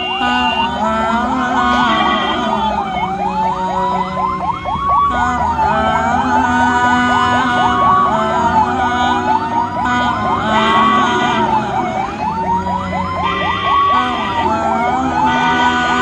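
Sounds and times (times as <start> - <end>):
ambulance siren: 0.0 - 16.0.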